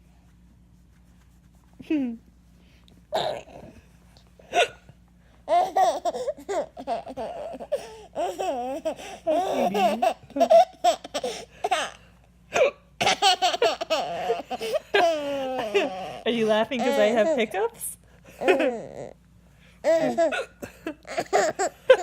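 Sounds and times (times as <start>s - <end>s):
baby belly laughing: 5.5s - 12.0s, 13.0s - 16.2s, 19.8s - 22.0s.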